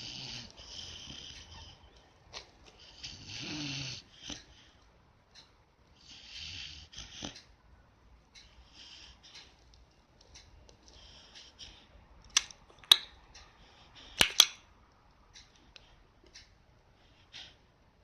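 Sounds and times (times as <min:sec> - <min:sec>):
dog snoring: 0:00.0 - 0:01.9, 0:02.7 - 0:04.7, 0:06.0 - 0:07.4
sharp clicks: 0:12.2 - 0:13.5, 0:14.1 - 0:16.5.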